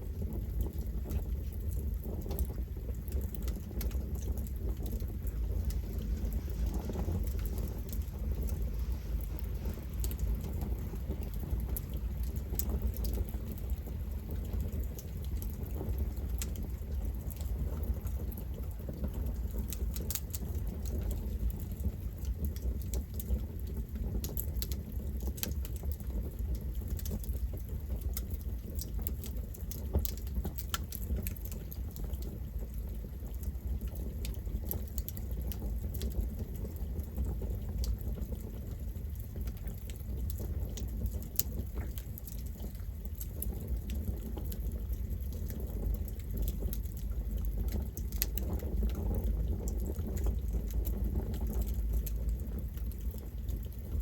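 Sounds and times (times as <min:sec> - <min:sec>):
wood crackling and popping: 0:00.0 - 0:54.0
flame rushing: 0:00.6 - 0:21.3.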